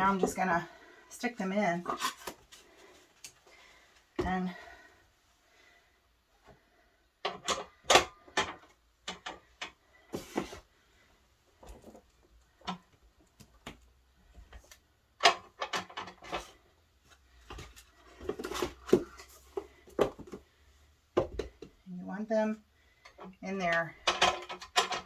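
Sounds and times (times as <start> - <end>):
wooden boards knocking and clattering: 21.2 - 21.7.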